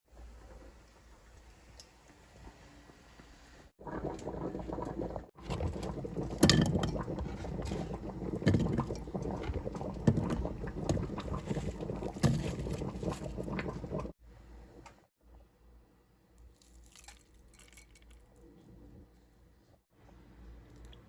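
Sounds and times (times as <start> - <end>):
rustling or sloshing: 3.9 - 14.2.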